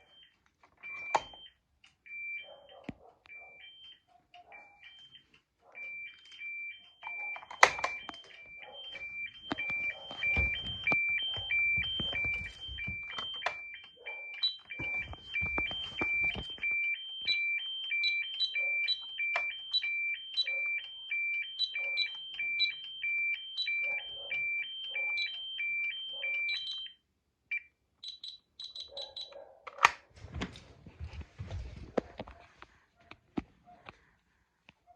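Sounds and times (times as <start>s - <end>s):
high beeps: 0.0s - 1.5s, 5.8s - 27.0s
two-tone fire alarm signal: 0.0s - 29.4s
knocks and handling noise: 7.1s - 13.7s, 14.6s - 16.8s.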